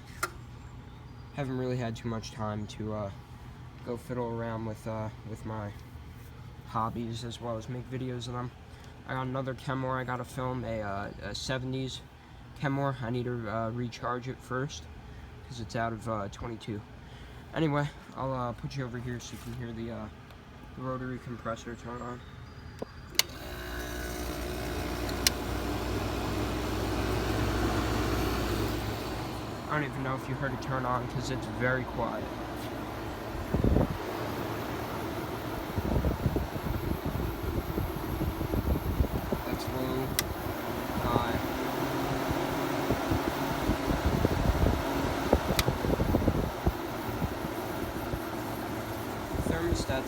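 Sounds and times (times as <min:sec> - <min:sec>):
air conditioner switch click: 0:00.0 - 0:00.4, 0:23.2 - 0:29.5, 0:38.0 - 0:42.4, 0:44.7 - 0:49.5
air conditioner humming: 0:00.0 - 0:22.2, 0:23.0 - 0:50.0.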